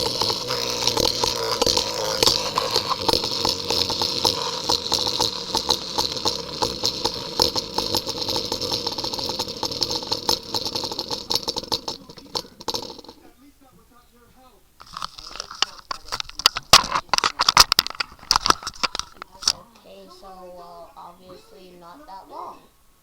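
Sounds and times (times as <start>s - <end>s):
spinning top rattling: 0.0s - 13.4s, 14.8s - 21.8s
whirring hiss: 0.0s - 16.9s.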